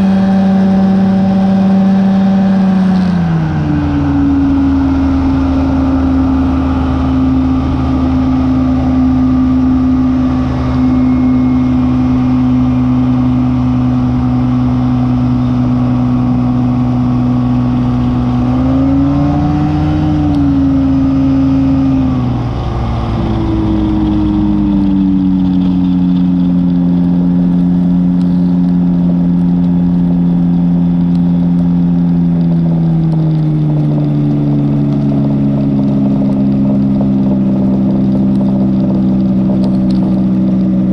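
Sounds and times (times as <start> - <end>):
two-stroke engine running: 0.0 - 40.9.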